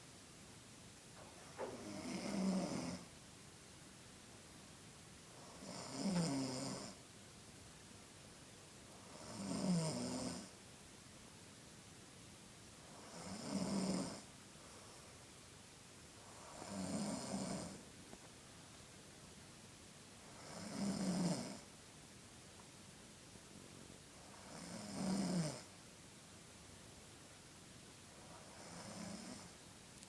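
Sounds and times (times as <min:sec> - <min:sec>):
quiet breathing: 0:01.2 - 0:03.1, 0:12.8 - 0:15.3, 0:28.0 - 0:30.0
boy snoring: 0:01.6 - 0:03.1, 0:05.4 - 0:07.0, 0:09.0 - 0:10.5, 0:12.9 - 0:14.3, 0:16.3 - 0:17.8, 0:20.3 - 0:21.6, 0:24.4 - 0:25.7, 0:28.4 - 0:29.5.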